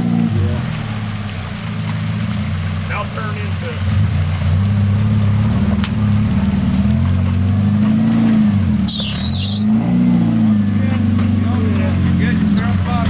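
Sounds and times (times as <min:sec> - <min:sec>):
car engine revving: 0:00.0 - 0:13.0
high-pitched squeal: 0:08.8 - 0:09.9.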